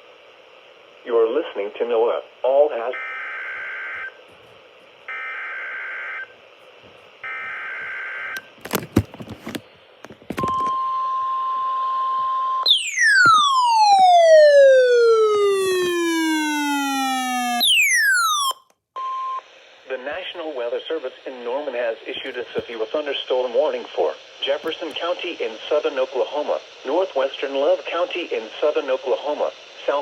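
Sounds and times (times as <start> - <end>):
electronic tone falling in pitch: 12.7 - 18.6
steady alert tone: 12.7 - 18.6.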